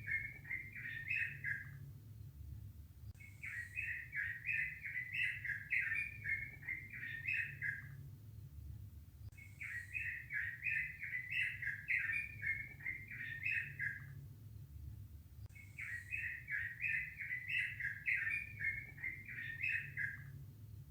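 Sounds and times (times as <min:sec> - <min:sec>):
bird singing: 0:00.0 - 0:01.9, 0:03.2 - 0:08.0, 0:09.3 - 0:14.2, 0:15.5 - 0:20.4
steady low hum: 0:00.0 - 0:20.9.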